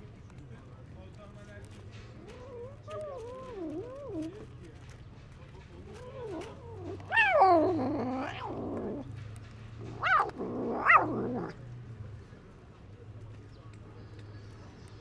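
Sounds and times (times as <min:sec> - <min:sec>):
cat growling and yowling: 0:06.0 - 0:09.0, 0:09.8 - 0:11.6
cat wailing: 0:06.2 - 0:09.0, 0:09.9 - 0:11.6.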